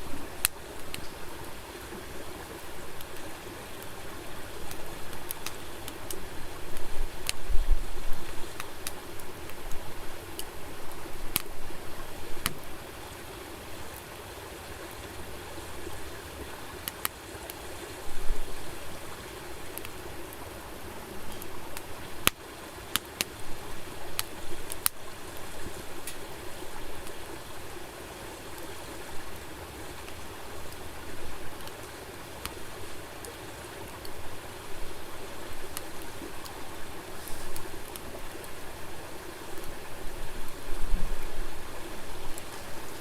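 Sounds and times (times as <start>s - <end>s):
campfire crackling and popping: 0.0s - 43.0s.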